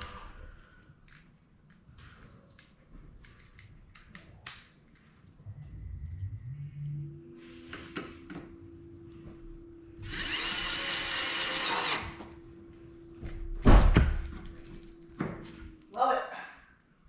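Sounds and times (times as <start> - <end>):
power drill driving a bolt: 10.0 - 12.3
loud thump: 13.3 - 14.4.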